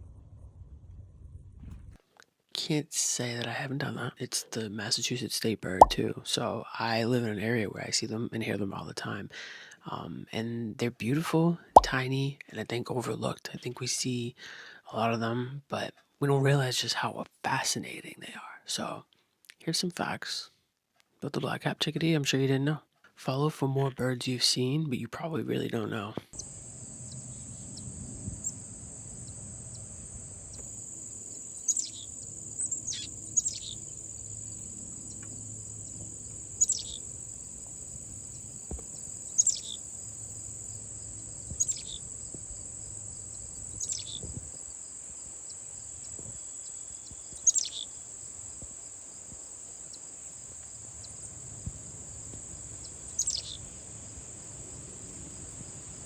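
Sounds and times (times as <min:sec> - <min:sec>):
high-pitched insect chorus: 0:26.4 - 0:56.0.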